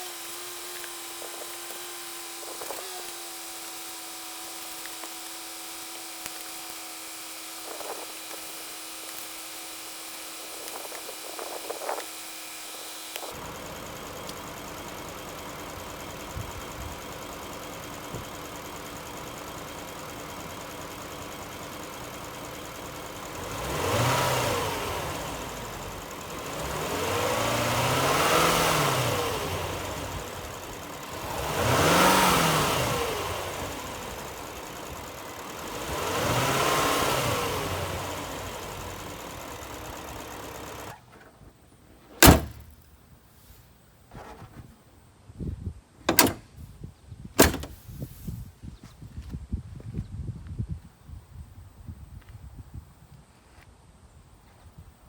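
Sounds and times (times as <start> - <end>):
car engine idling and revving: 0.0 - 41.2, 42.2 - 42.7, 46.1 - 46.5.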